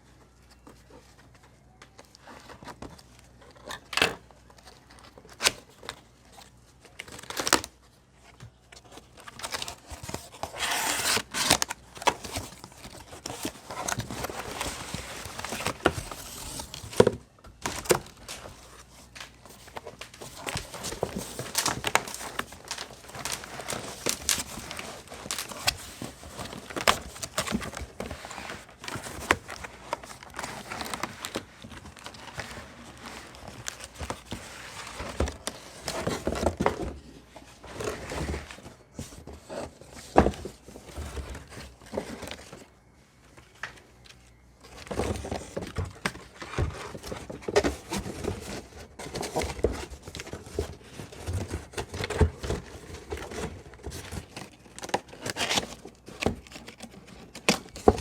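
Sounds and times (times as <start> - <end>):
wrapping rustling and tearing: 0.4 - 36.7, 44.0 - 58.0.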